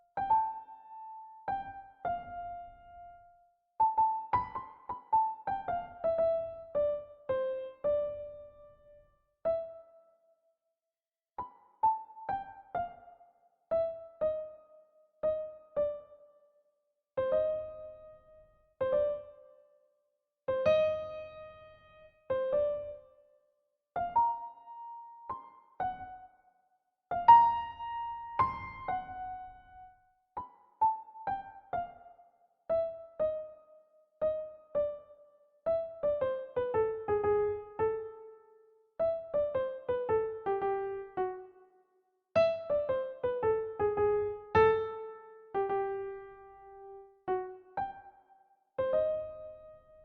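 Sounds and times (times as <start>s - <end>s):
slow solo piano melody: 0.0s - 10.2s, 11.4s - 16.5s, 17.2s - 19.8s, 20.5s - 23.3s, 24.0s - 26.4s, 27.1s - 41.8s, 42.4s - 50.0s.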